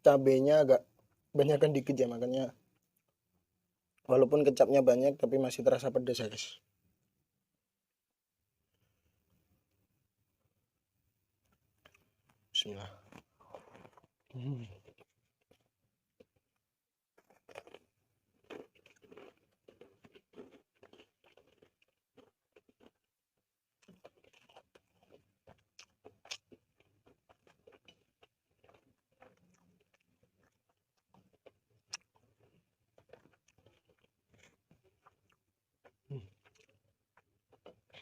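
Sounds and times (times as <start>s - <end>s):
chewing food: 11.4s - 38.0s.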